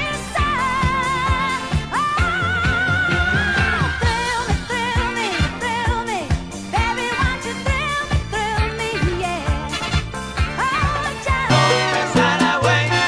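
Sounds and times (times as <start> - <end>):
pop song with singing: 0.0 - 13.0.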